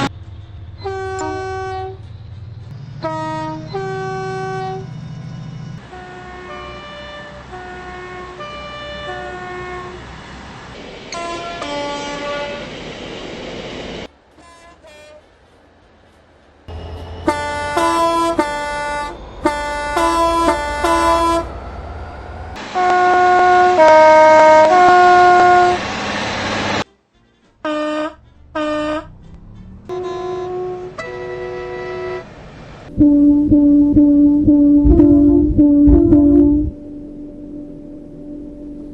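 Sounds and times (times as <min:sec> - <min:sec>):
low engine rumble: 0:00.0 - 0:11.4, 0:15.2 - 0:38.9
train horn blasts: 0:00.8 - 0:02.1, 0:02.9 - 0:05.0, 0:05.8 - 0:10.2, 0:11.1 - 0:12.7, 0:14.4 - 0:15.3, 0:16.7 - 0:21.6, 0:22.6 - 0:25.9, 0:27.4 - 0:32.3, 0:32.9 - 0:38.9.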